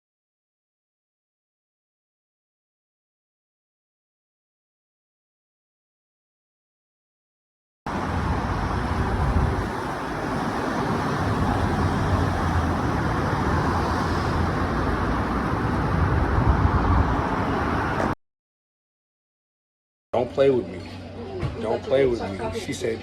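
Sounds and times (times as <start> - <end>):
road traffic rumble: 7.9 - 18.2.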